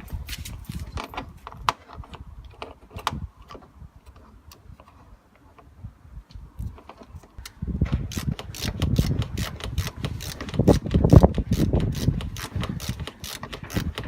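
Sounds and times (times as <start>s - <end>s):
screwdriver clicking and scraping: 6.6s - 14.0s.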